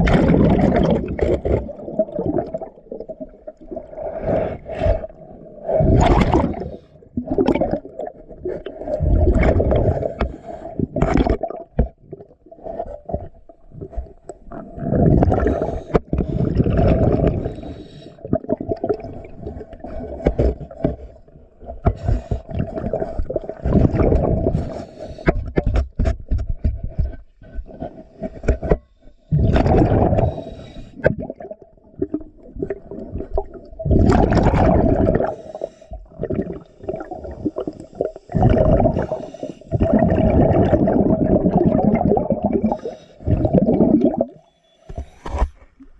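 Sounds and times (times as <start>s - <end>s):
bubbles gurgling underwater: 0.0s - 24.8s, 28.6s - 44.5s
diver breathing through regulator: 4.0s - 7.0s, 8.6s - 11.0s, 15.3s - 18.3s, 19.2s - 23.1s, 23.8s - 25.6s, 27.5s - 31.1s, 35.1s - 40.2s, 42.6s - 43.6s.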